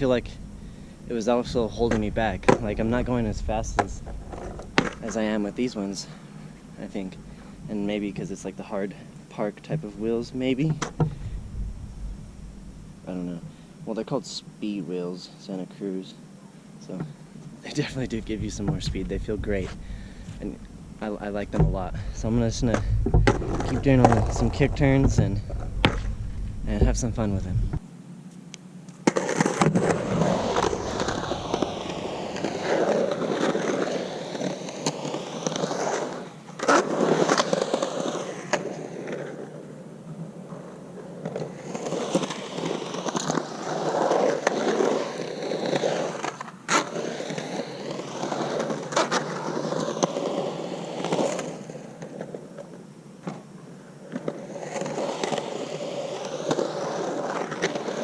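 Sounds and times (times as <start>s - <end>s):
skateboard wheels rolling on concrete: 0.0s - 16.2s, 16.8s - 58.0s
skateboard clacks: 3.7s - 5.2s, 29.0s - 39.6s, 40.6s - 53.4s, 54.1s - 58.0s.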